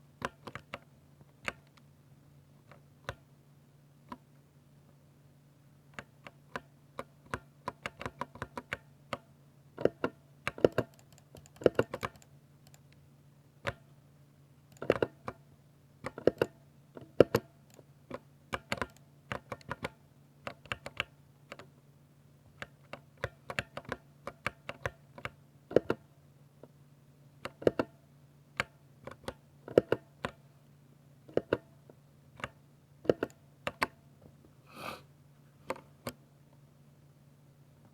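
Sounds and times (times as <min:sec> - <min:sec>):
faint steady hum: 0:00.0 - 0:37.9
typing on mechanical keyboard: 0:07.3 - 0:09.2, 0:09.8 - 0:12.8, 0:17.2 - 0:21.7.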